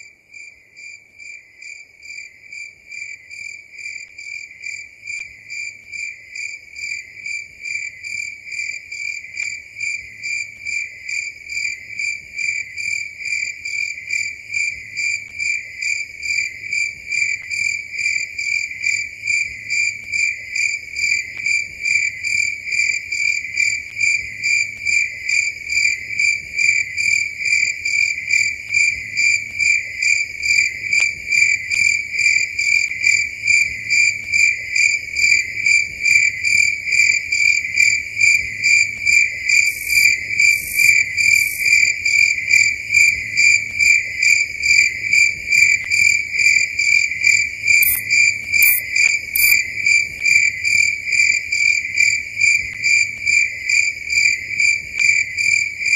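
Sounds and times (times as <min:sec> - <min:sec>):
cricket chirping: 0:00.0 - 0:55.9
short high-pitched buzzes: 0:47.8 - 0:48.0, 0:48.6 - 0:48.8, 0:49.4 - 0:49.6.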